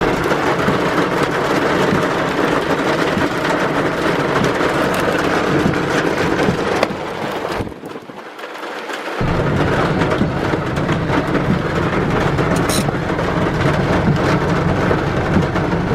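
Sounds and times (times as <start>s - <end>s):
torrential rain pouring: 0.0s - 15.9s.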